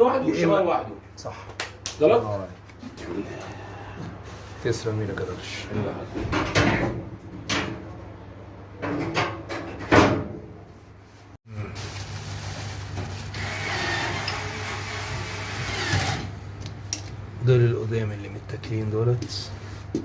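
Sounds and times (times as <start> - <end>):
oven door knocks and clunks: 6.2 - 7.8, 8.8 - 10.5.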